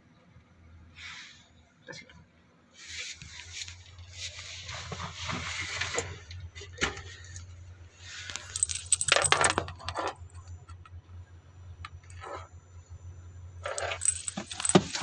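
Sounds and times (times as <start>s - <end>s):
low steady hum: 0.0s - 15.0s
rustling handling noise: 2.8s - 10.3s, 13.6s - 15.0s.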